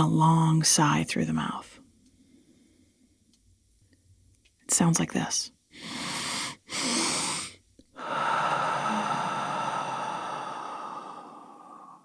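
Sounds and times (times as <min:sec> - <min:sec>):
woman inhaling through nose: 0:05.8 - 0:12.0.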